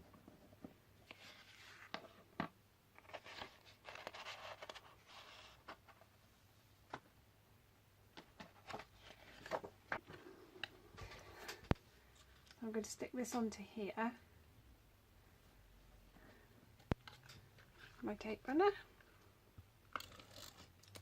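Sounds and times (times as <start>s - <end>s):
paper card rustling and scraping: 1.0s - 2.2s, 3.0s - 6.1s, 8.2s - 10.3s.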